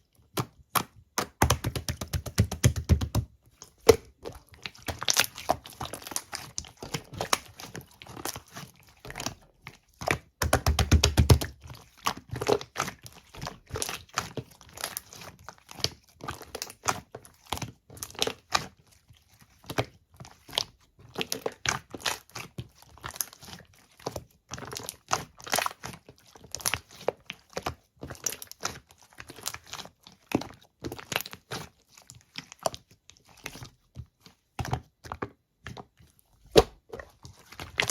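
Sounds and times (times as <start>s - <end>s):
slime squishing and crackling: 0.1s - 37.9s.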